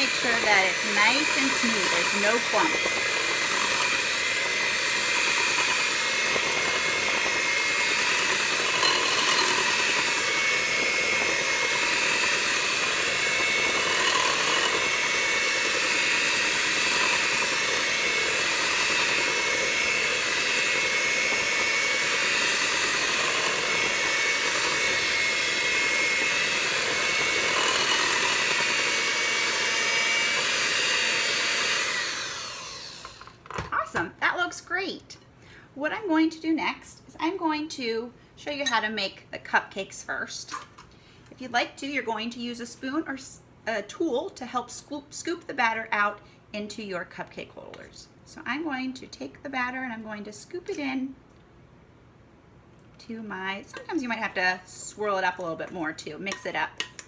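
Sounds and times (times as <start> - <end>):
electric mixer whining: 0.0 - 33.5.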